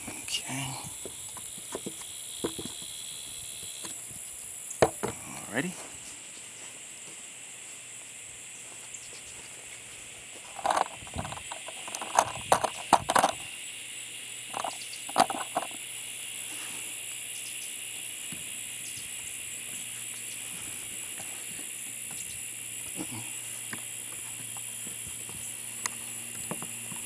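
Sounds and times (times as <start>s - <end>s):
steady high hiss: 0.0s - 27.0s
bipod clicks and knocks: 10.5s - 13.4s.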